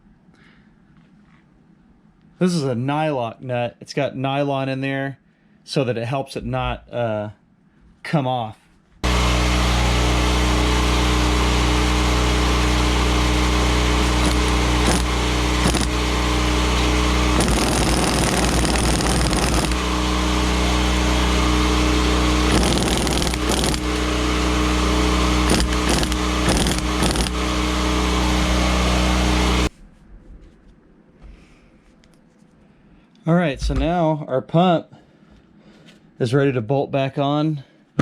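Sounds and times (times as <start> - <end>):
motor humming: 9.0 - 29.7
power tool bursts: 9.0 - 29.7.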